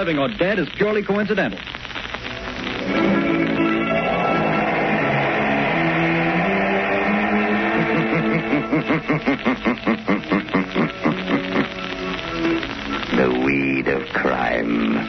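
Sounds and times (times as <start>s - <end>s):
theme music chords: 2.4s - 9.0s.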